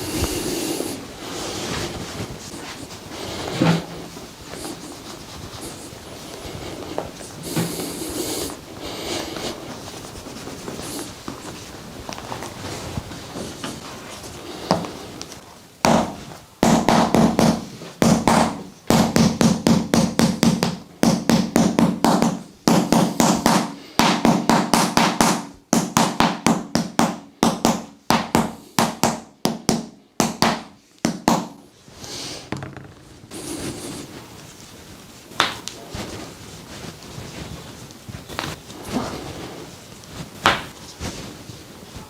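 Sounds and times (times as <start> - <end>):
percussive massage strikes: 15.8 - 31.7, 35.3 - 35.7, 40.4 - 41.2.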